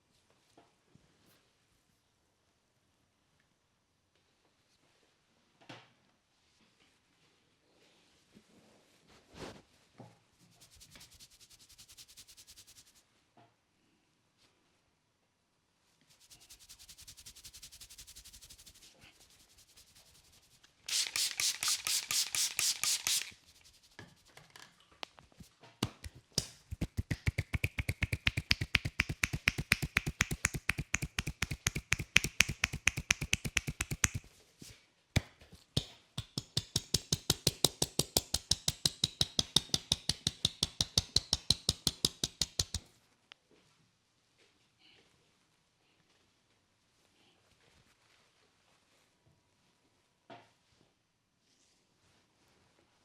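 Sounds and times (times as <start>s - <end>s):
hands slapping on a head: 10.7s - 13.0s, 16.3s - 20.3s, 20.9s - 24.2s, 25.8s - 34.3s, 35.2s - 42.8s.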